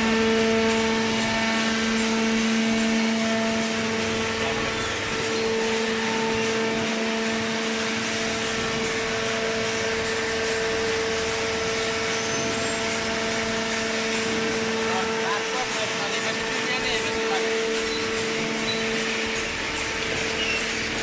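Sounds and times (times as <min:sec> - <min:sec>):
constant whirring: 0:00.0 - 0:21.0
hydraulic power unit humming: 0:00.0 - 0:21.0.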